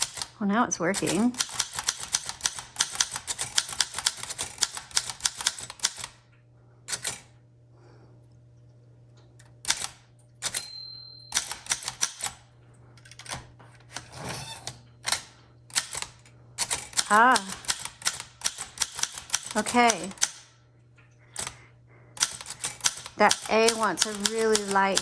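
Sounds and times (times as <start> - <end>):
typewriter keys striking: 0.0 - 6.2, 11.3 - 12.4, 15.1 - 20.4, 22.2 - 25.0
typewriter margin bell ringing: 10.4 - 12.2.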